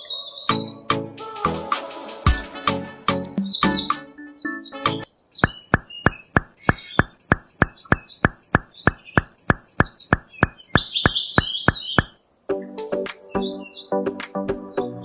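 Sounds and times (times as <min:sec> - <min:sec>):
sharp knocks: 0:05.4 - 0:12.2.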